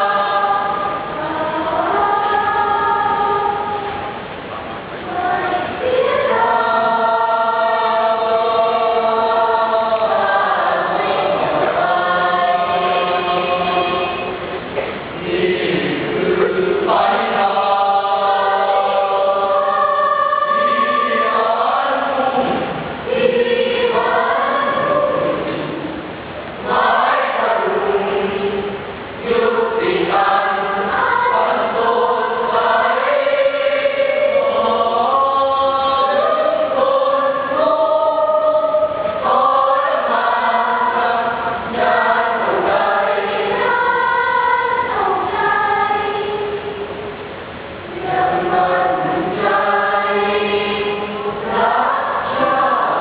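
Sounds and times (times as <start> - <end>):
choir singing in harmony: 0.0 - 53.0.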